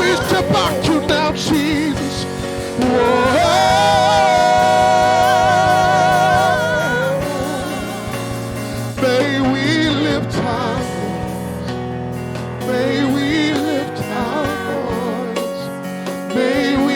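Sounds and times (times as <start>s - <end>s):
gospel singing voice: 0.0s - 16.9s
sustained accompaniment: 0.0s - 16.9s.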